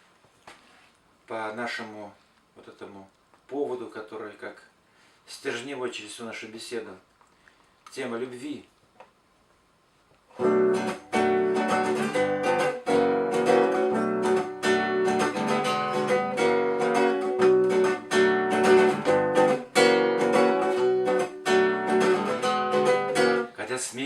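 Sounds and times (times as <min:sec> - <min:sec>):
acoustic guitar strumming: 0:10.4 - 0:23.6.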